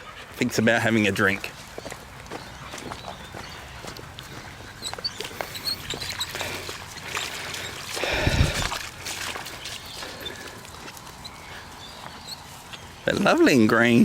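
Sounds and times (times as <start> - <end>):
dog drinking: 3.2 - 10.6
dog splashing in water: 3.2 - 11.0.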